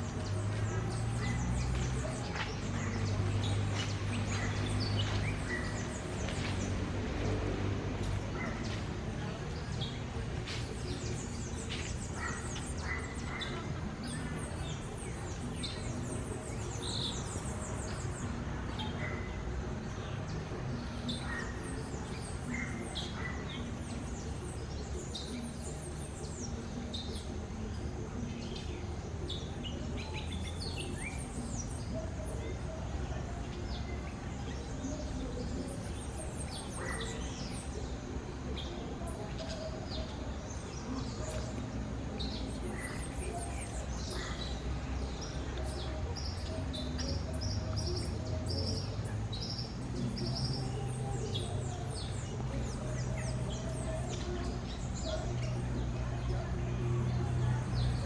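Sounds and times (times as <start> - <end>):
low background noise: 0.0 - 58.0.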